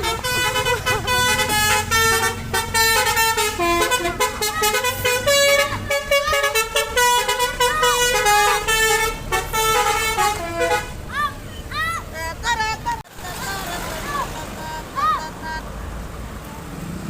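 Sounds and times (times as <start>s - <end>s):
multi-tone air horn melody: 0.0s - 11.0s.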